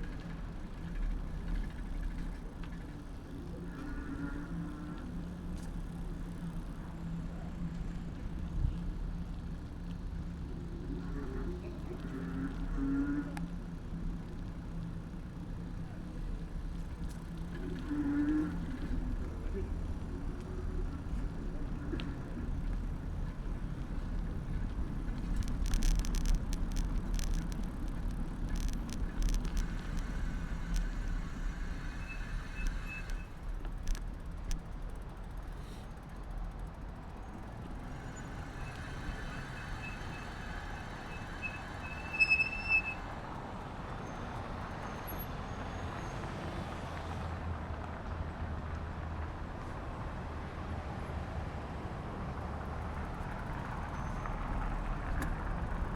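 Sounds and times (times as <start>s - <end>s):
bicycle clicks and rattles: 0.0s - 10.6s, 11.2s - 44.6s
road and traffic noise: 0.0s - 55.9s
thin high squeals: 29.6s - 33.4s, 38.0s - 43.2s.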